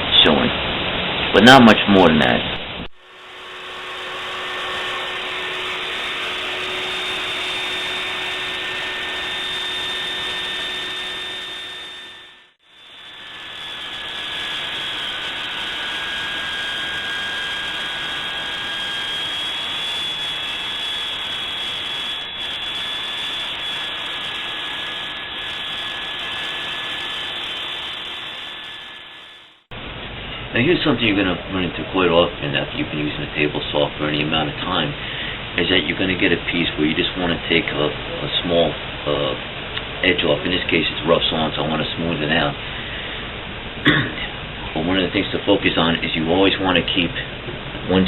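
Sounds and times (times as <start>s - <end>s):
table saw whining: 2.9s - 29.7s.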